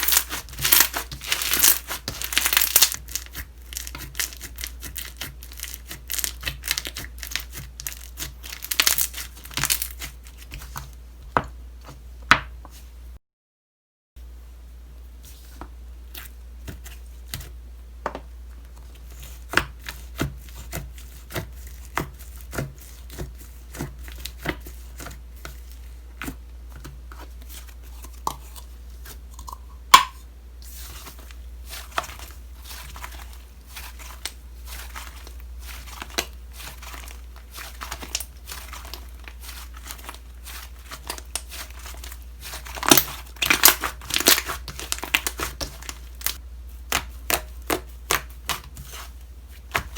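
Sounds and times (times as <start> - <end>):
slime crackling: 0.0 - 10.8, 30.7 - 49.9.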